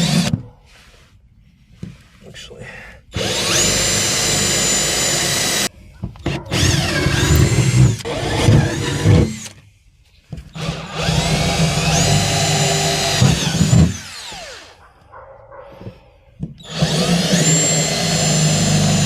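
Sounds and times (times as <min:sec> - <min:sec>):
electric drill boring through metal: 0:00.0 - 0:00.3, 0:03.1 - 0:09.6, 0:10.5 - 0:14.8, 0:16.6 - 0:19.0.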